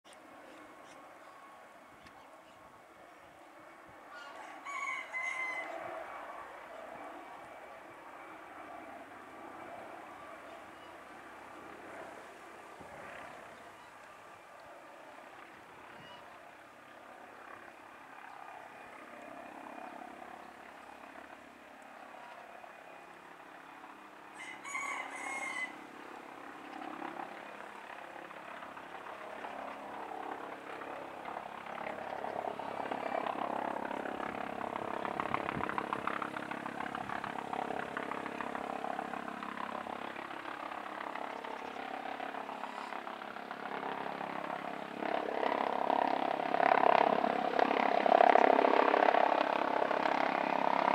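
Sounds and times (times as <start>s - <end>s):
helicopter approaching: 0.1s - 50.9s
rooster crowing: 4.1s - 5.9s, 24.4s - 25.8s.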